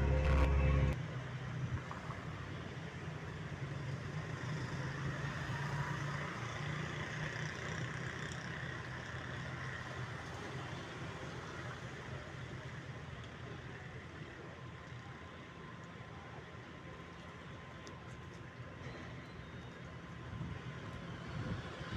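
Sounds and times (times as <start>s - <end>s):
steady low hum: 0.0s - 1.0s.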